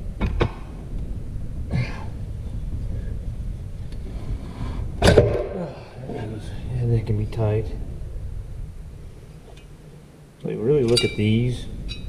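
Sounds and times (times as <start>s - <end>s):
steady low rumble: 0.0s - 12.0s
sharp knock: 5.0s - 5.6s.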